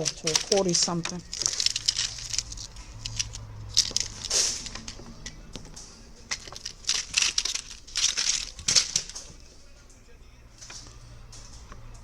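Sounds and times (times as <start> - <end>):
plastic packaging crinkling: 0.0 - 5.2, 6.3 - 9.4.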